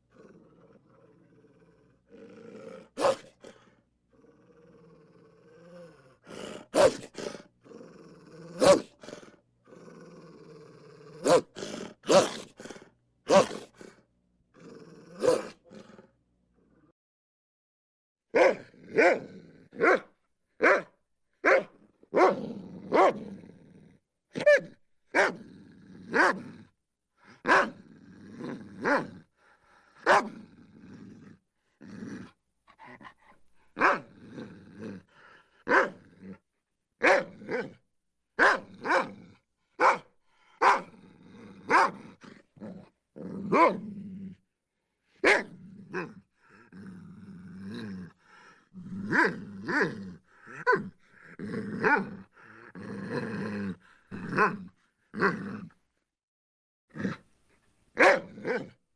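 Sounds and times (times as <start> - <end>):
dog growling: 0.0 - 17.0, 18.4 - 20.0, 22.2 - 24.6, 25.2 - 36.4, 38.6 - 44.4, 45.2 - 55.8, 56.9 - 57.3
dog barking: 3.0 - 3.4, 6.7 - 7.4, 8.6 - 9.0, 11.2 - 12.7, 13.3 - 13.8, 15.2 - 15.6, 18.3 - 23.2, 24.4 - 25.4, 26.1 - 26.4, 27.4 - 27.8, 30.0 - 30.4, 33.8 - 34.1, 35.7 - 36.0, 37.0 - 37.8, 38.4 - 39.2, 39.8 - 41.0, 41.7 - 42.0, 43.5 - 43.8, 45.2 - 46.1, 50.6 - 50.8, 58.0 - 58.8.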